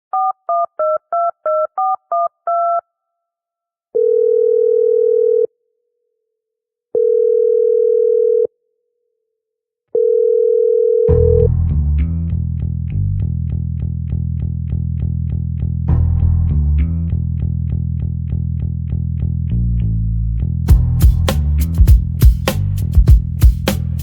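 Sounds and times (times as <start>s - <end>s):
long phone beeps: 0.2s - 2.8s
telephone keypad tones: 0.2s - 2.8s
bass-heavy beat with plucked notes: 11.1s - 24.0s.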